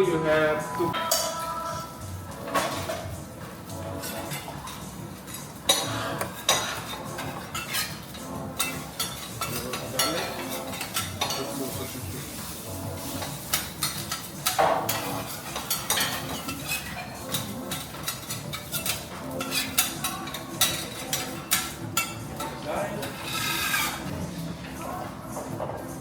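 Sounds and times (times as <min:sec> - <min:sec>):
food sizzling: 0:00.1 - 0:22.4
metal spatulas clinking on griddle: 0:00.9 - 0:03.1, 0:03.9 - 0:11.8, 0:13.2 - 0:23.3.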